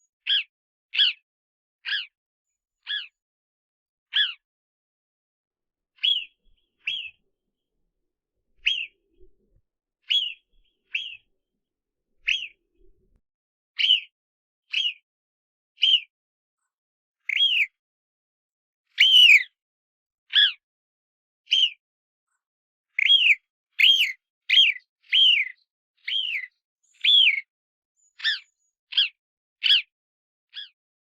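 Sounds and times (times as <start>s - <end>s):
groundhog alarm whistles: 19.0s - 19.4s.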